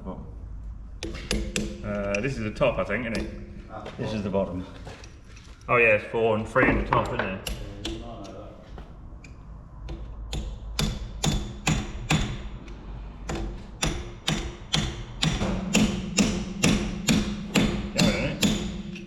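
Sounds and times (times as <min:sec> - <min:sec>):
hammer striking steel: 0:01.0 - 0:02.2, 0:07.0 - 0:08.4, 0:09.8 - 0:19.0.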